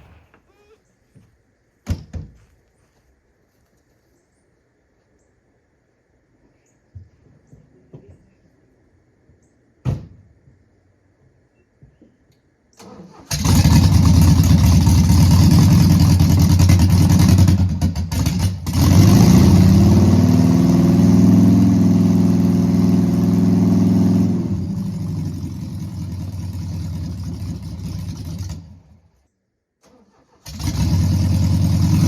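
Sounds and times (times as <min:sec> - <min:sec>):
car engine revving: 0:13.3 - 0:28.7, 0:30.5 - 0:32.0.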